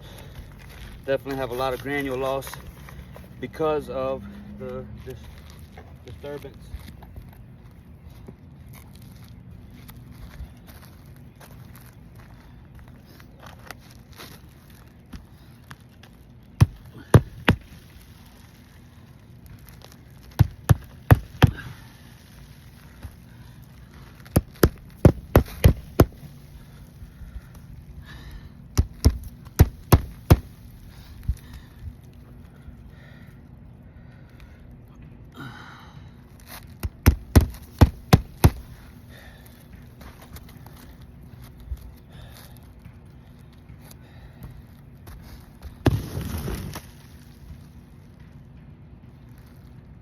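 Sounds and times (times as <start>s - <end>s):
hammer striking nails into shingles: 16.6s - 17.7s, 20.4s - 21.7s, 24.3s - 26.2s, 28.8s - 30.5s, 36.8s - 38.7s.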